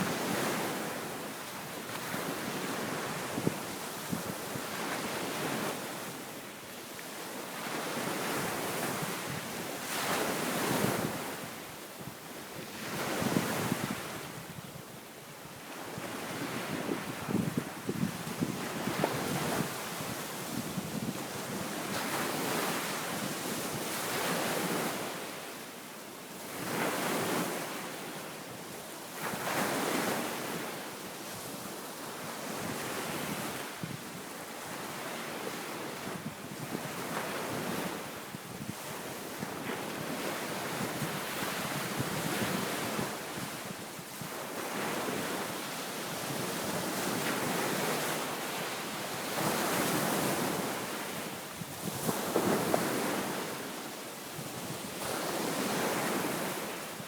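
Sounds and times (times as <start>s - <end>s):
wind on microphone: 15.9s - 23.8s, 36.0s - 45.5s.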